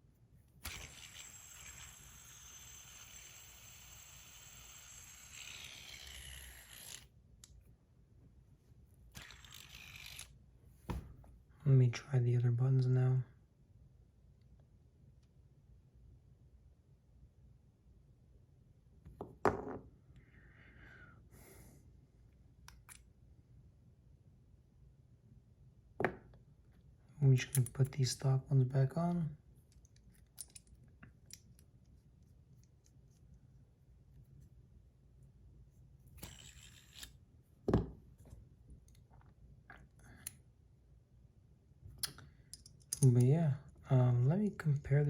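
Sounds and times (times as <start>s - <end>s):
fidget spinner whirring: 0.6s - 7.1s, 9.1s - 10.3s, 36.1s - 37.2s.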